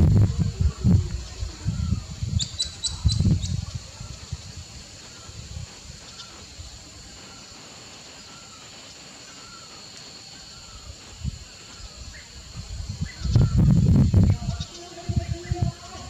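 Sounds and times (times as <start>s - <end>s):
low rumble: 0.0s - 2.4s
high-pitched insect drone: 0.0s - 16.0s.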